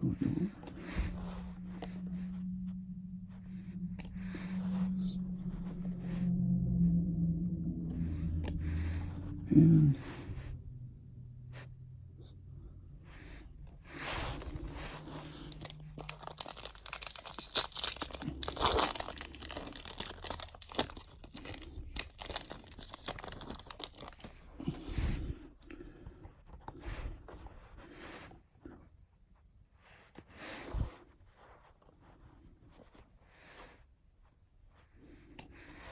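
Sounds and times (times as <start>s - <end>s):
cards clicking and rustling: 14.3s - 24.8s
foil wrapper tearing and crinkling: 14.4s - 25.2s.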